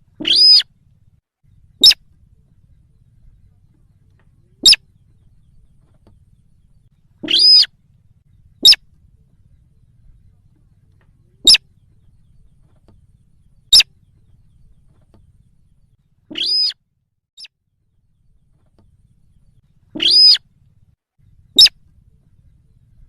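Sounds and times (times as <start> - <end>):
sharp high bird calls: 0.1 - 0.7, 1.6 - 2.2, 4.6 - 5.3, 7.1 - 7.8, 8.6 - 8.9, 11.4 - 11.7, 13.6 - 14.0, 16.3 - 16.8, 19.8 - 20.4, 21.4 - 21.8.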